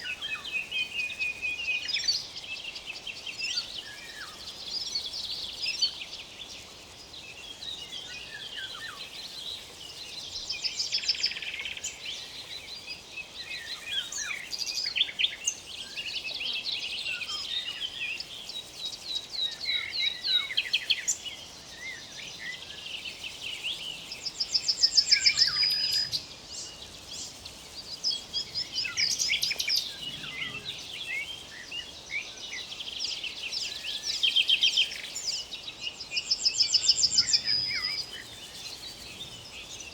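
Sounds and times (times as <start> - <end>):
songbirds singing and trilling: 0.0 - 39.9.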